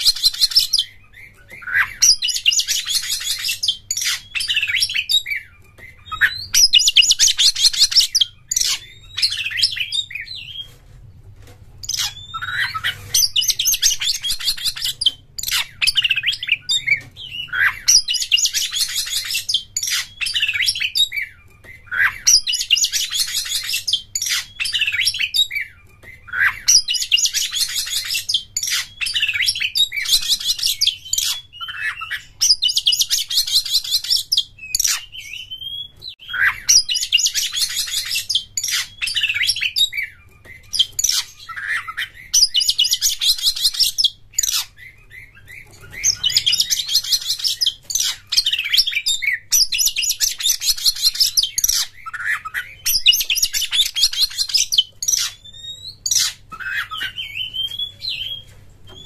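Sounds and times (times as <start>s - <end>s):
bird singing rapid chattering trills: 0.0s - 10.6s, 11.8s - 58.4s
bird whistles: 11.9s - 59.0s.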